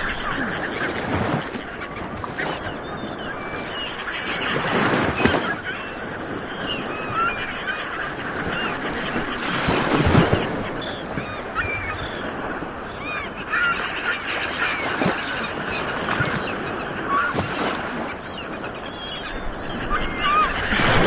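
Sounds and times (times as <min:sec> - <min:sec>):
ocean waves washing: 0:00.0 - 0:21.0.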